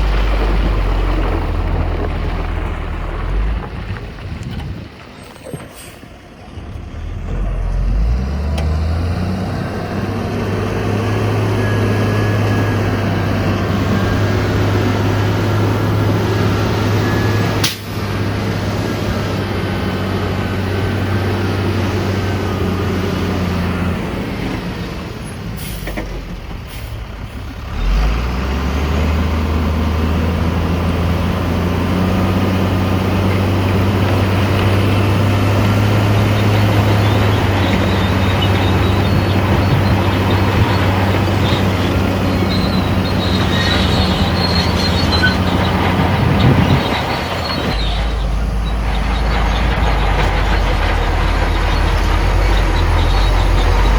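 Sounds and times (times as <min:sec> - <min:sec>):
heavy diesel engine droning: 0:00.0 - 0:53.9.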